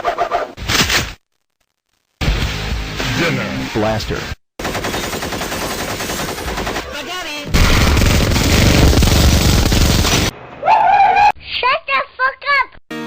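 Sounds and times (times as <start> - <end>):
automatic machine-gun fire: 4.6 - 6.9, 7.5 - 10.3.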